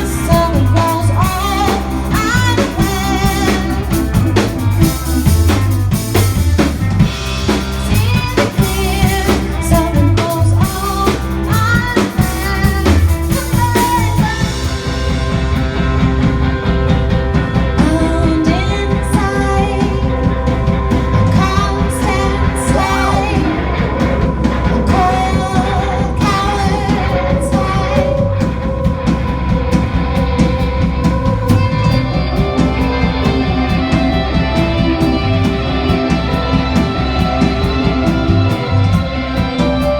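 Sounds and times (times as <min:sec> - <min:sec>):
person singing: 0:00.0 - 0:04.9, 0:07.8 - 0:14.9, 0:17.8 - 0:29.6
bass: 0:00.0 - 0:39.9
drum kit: 0:00.0 - 0:39.9
guitar: 0:00.0 - 0:39.9.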